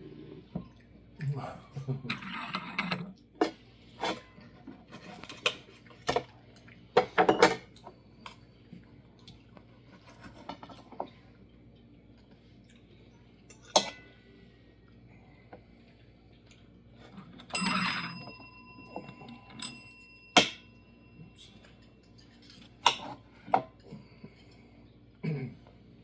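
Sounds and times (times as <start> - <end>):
cutlery clinking: 17.6 - 20.8.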